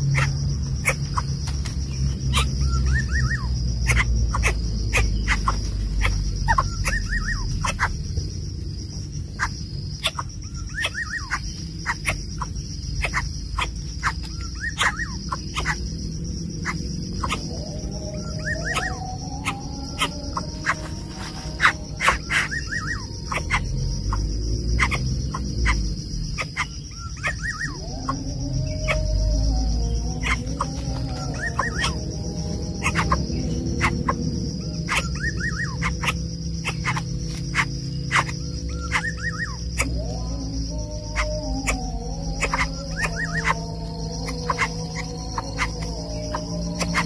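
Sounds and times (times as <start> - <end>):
bird chirps: 0.0 - 47.0
high insect drone: 0.0 - 47.0
lower wavering call: 14.4 - 24.4, 26.6 - 47.0.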